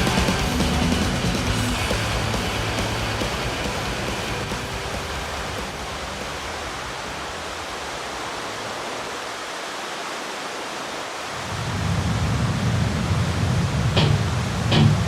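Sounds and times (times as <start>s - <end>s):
waterfall rushing: 0.0s - 11.7s.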